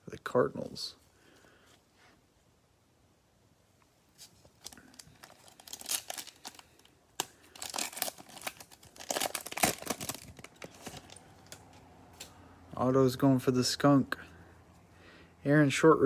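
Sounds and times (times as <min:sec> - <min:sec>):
foil wrapper tearing and crinkling: 0:04.2 - 0:11.6.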